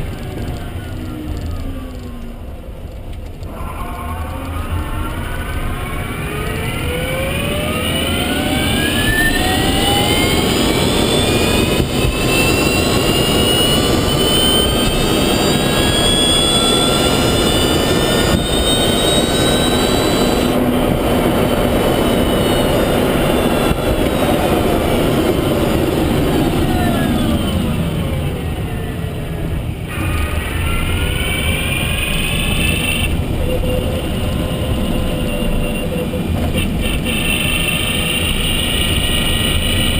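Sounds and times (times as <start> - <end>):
tyre and road noise: 29.4 - 39.9.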